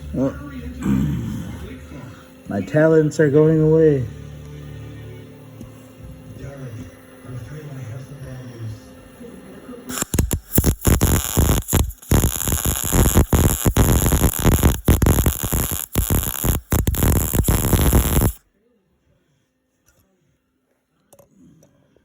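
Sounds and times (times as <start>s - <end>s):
welding arc crackling: 9.9s - 18.4s.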